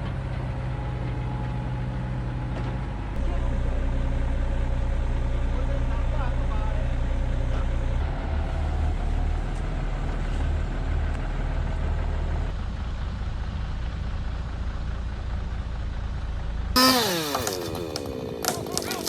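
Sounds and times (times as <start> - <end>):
diesel engine humming: 0.0 - 19.0
sound with falling pitch: 16.8 - 18.8.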